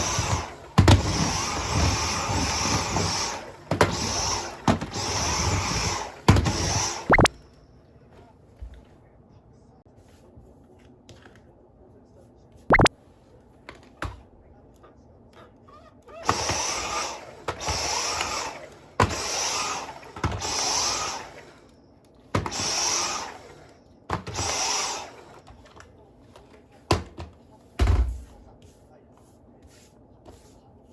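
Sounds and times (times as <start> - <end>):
vacuum motor pulsing: 0.0 - 7.3, 16.1 - 21.7, 22.3 - 25.5.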